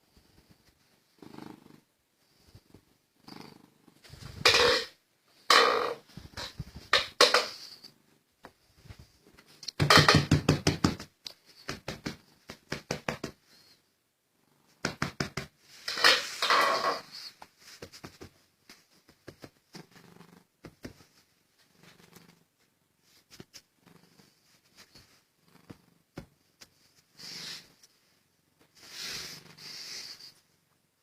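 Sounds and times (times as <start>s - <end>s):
cat purring: 0.0s - 4.8s, 19.2s - 30.7s
rustling from cat rubbing: 0.0s - 4.8s, 5.9s - 9.6s, 15.6s - 30.7s
knocks from cat rubbing: 9.8s - 11.1s.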